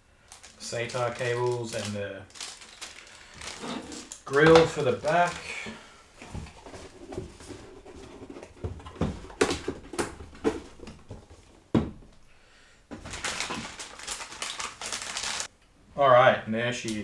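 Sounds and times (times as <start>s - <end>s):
packaging rustling: 0.3s - 12.2s, 12.9s - 15.5s
box thump: 2.4s - 12.2s.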